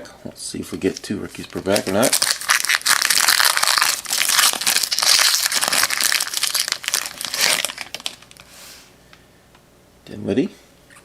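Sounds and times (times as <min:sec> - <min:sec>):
plastic wrapper crinkling: 0:00.8 - 0:08.5.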